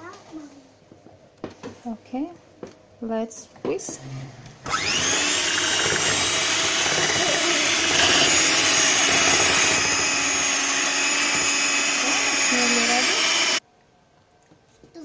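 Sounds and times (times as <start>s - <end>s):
electric mixer whining: 4.6s - 13.6s.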